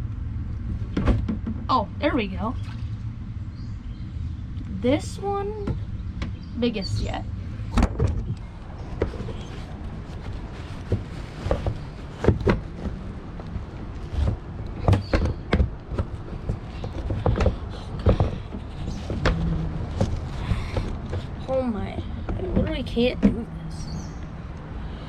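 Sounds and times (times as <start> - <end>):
steady low rumble: 0.0 - 25.0
knocks and bumps on a kayak: 0.7 - 1.7, 9.0 - 13.2, 14.1 - 21.4.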